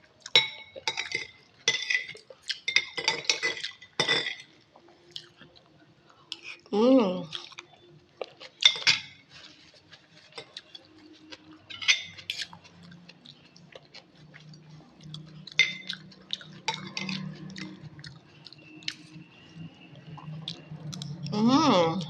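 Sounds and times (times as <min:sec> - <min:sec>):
person chewing noodles: 0:00.0 - 0:03.9, 0:04.5 - 0:06.7, 0:07.3 - 0:21.3.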